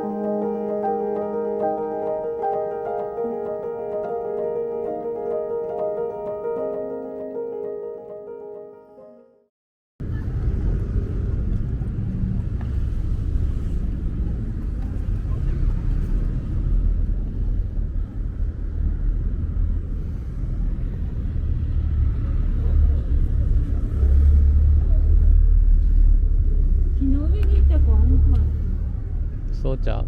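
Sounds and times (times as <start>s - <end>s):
car rumbling in motion: 10.0s - 30.0s.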